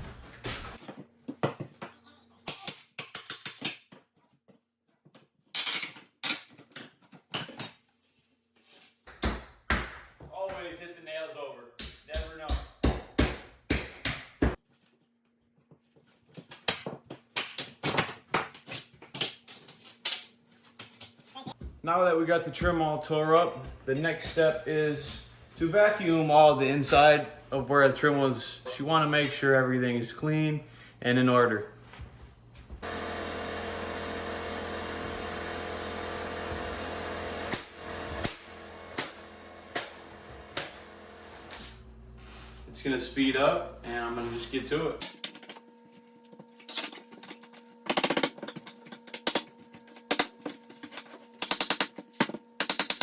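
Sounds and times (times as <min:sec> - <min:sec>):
vacuum cleaner motor whine: 0:32.8 - 0:41.9
hammer striking nails: 0:32.9 - 0:41.5.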